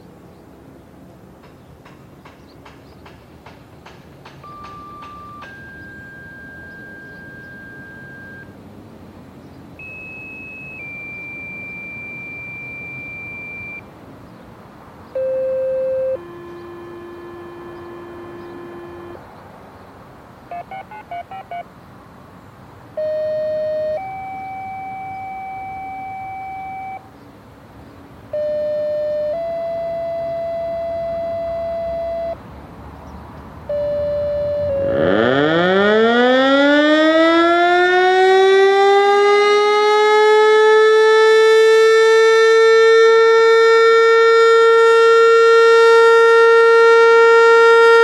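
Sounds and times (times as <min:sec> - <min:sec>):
steady electronic tones: 0:04.4 - 0:08.5, 0:09.8 - 0:13.8, 0:15.2 - 0:19.2, 0:20.5 - 0:21.7, 0:23.0 - 0:27.1, 0:28.3 - 0:32.4, 0:33.7 - 0:36.0.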